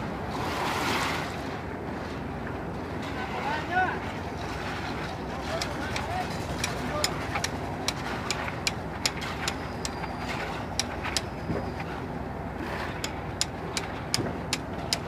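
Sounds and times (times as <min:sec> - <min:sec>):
engine-like drone: 0:04.1 - 0:15.0.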